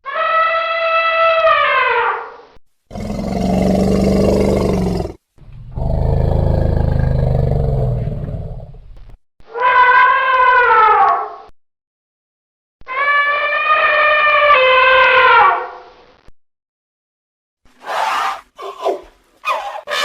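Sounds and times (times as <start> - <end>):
elephant low rough roars: 2.9 - 8.9.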